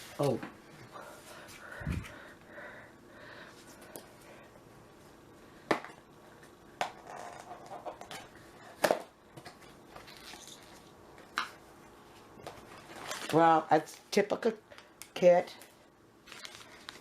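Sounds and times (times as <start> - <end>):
packaging rustling: 12.7 - 13.4, 16.2 - 17.0.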